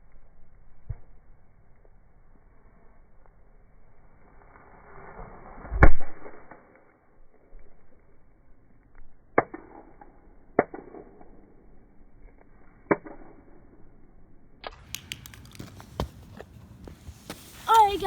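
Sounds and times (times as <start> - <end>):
small clicks and taps: 14.7 - 16.0.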